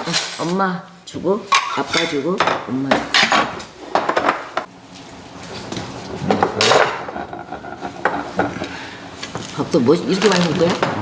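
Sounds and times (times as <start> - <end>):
tableware and cutlery clinking: 1.5 - 4.7, 6.1 - 11.0.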